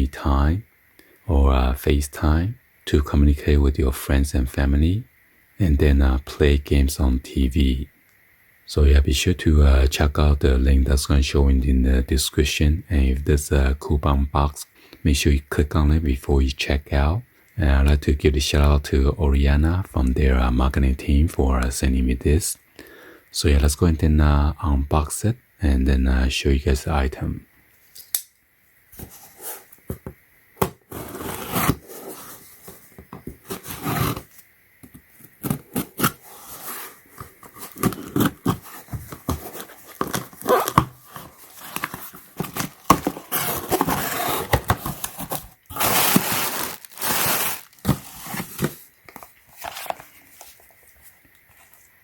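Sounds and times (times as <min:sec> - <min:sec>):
packaging rustling and tearing: 0:33.3 - 0:34.3, 0:35.2 - 0:50.9.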